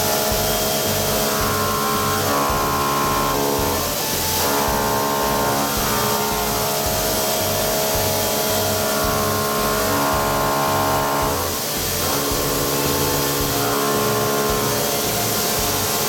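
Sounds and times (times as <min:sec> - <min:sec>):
background music with steady beat: 0:00.0 - 0:16.0
end mill cutting metal whine: 0:00.0 - 0:16.0.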